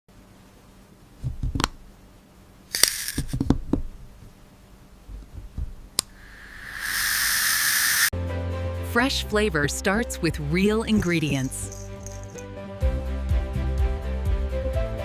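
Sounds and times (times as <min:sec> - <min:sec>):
electric grinder grinding hiss: 0:02.8 - 0:03.4, 0:06.1 - 0:08.1.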